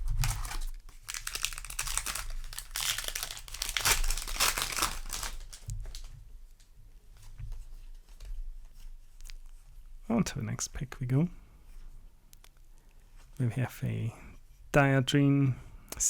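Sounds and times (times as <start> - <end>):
foil wrapper crinkling and tearing: 0.0 - 6.1.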